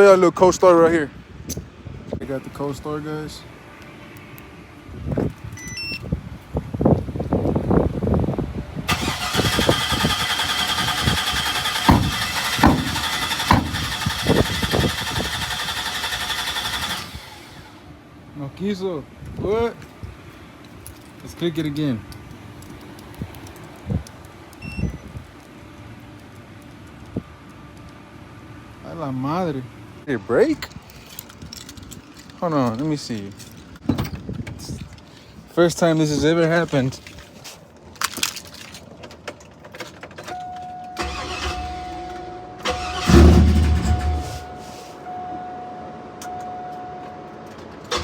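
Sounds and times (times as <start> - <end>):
ignition clicks: 8.9 - 17.1, 40.4 - 44.6
truck engine cranking: 8.9 - 17.8, 41.0 - 44.8.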